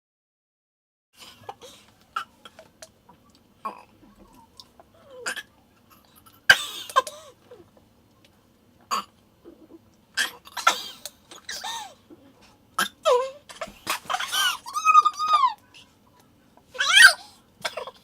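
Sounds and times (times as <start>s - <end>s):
person coughing: 6.5s - 7.4s, 10.2s - 12.0s, 17.6s - 18.0s.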